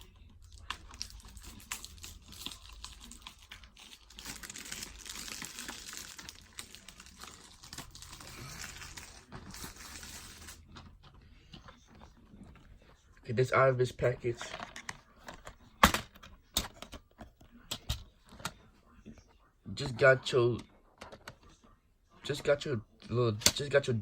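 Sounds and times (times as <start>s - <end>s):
plastic wrap crinkling: 0.0s - 11.0s.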